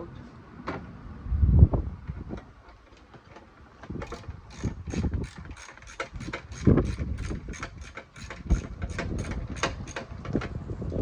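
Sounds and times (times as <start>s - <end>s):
ratchet wrench clicking: 4.0s - 10.1s.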